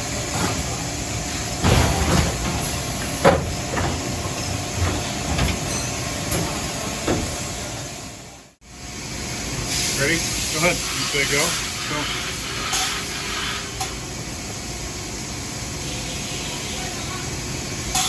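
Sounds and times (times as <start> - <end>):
drilling machine hiss: 9.6 - 14.1.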